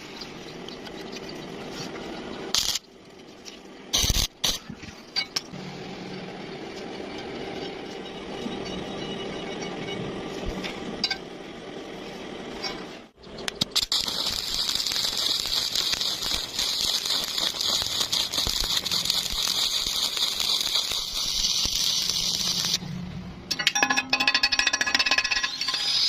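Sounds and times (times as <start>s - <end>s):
arc welding crackling hiss: 2.5s - 2.8s, 3.9s - 4.6s, 13.6s - 22.8s.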